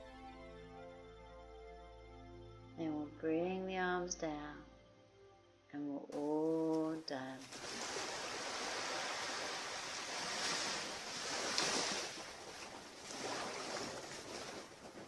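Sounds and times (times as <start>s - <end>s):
waves breaking on beach: 7.4s - 15.0s.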